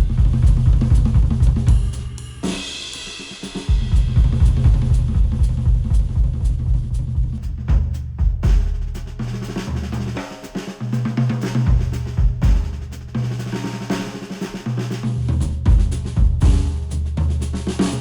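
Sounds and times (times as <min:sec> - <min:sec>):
drum kit music with heavy bass: 0:00.0 - 0:18.0.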